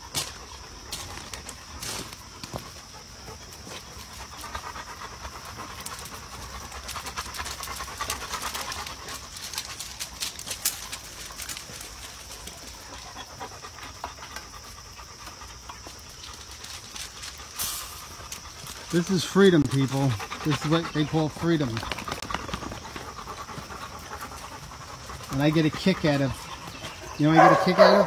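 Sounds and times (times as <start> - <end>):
dogs panting: 0.0 - 28.0
small clicks and rustles: 6.8 - 13.1.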